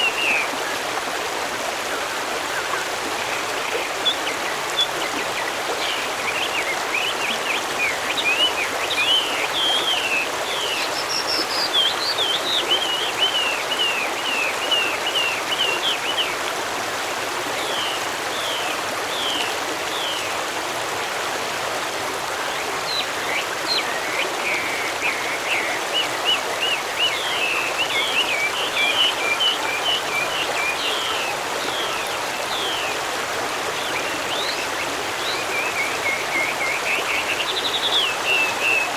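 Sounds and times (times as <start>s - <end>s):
stream flowing: 0.0s - 38.9s
small birds chirping: 3.3s - 16.4s, 22.5s - 33.0s.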